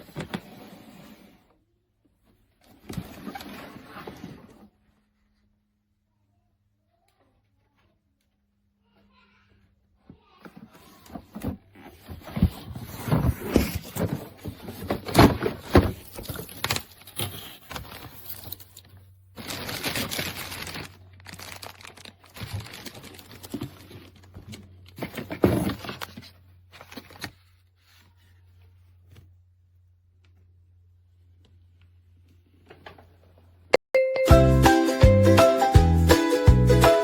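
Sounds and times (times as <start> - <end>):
handling knocks and crinkling: 10.4 - 27.6.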